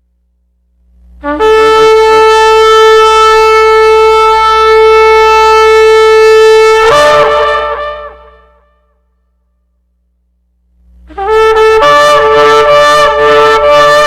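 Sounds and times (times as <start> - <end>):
shofar blast: 1.2 - 9.0, 11.0 - 14.0.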